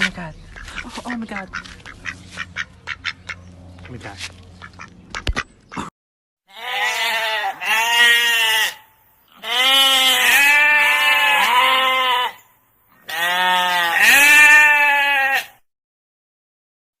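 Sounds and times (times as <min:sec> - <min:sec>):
wavering bleating calls: 0:06.5 - 0:15.6.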